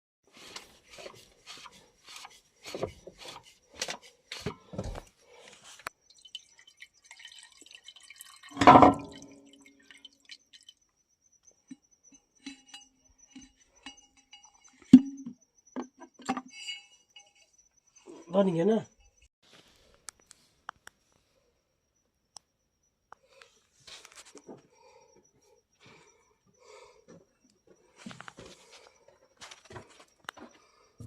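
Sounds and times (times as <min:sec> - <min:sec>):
metal tapping and knocking: 0:08.5 - 0:09.4, 0:11.6 - 0:17.5.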